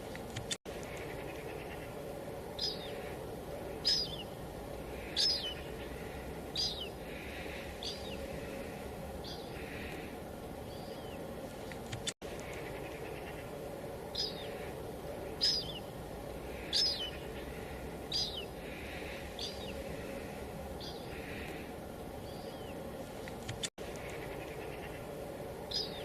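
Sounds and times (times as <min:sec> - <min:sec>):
light drizzle hiss: 0:00.0 - 0:26.0
bird chirping: 0:00.8 - 0:08.6, 0:09.2 - 0:10.0, 0:10.6 - 0:11.3, 0:12.4 - 0:19.9, 0:20.8 - 0:21.6, 0:22.2 - 0:22.8, 0:23.9 - 0:26.0.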